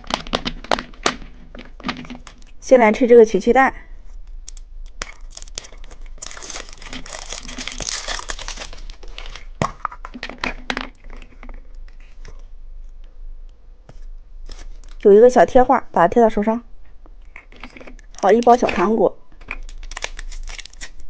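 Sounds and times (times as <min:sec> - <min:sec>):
candy wrapper crinkling and tearing: 0:04.3 - 0:12.4, 0:17.3 - 0:21.0.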